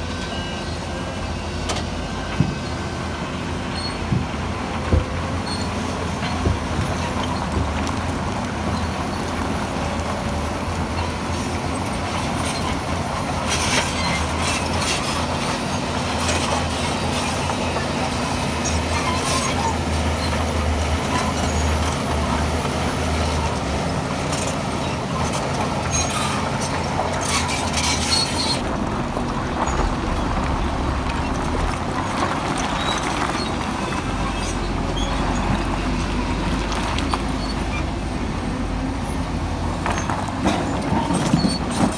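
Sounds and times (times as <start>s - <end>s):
bulldozer diesel engine running: 0.0s - 41.9s
clanking and scraping of stone: 24.3s - 35.7s.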